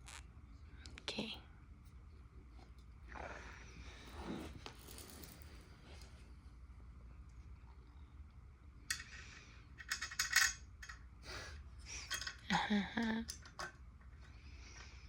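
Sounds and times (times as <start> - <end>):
metal hardware clinking and scraping: 4.6 - 5.6, 8.9 - 11.0.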